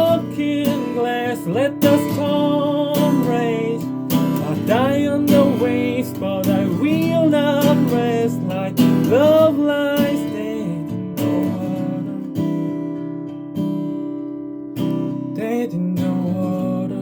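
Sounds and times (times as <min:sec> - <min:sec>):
person singing wordless melody: 0:00.0 - 0:12.4, 0:15.4 - 0:17.0
strummed acoustic guitar chords: 0:00.0 - 0:17.0.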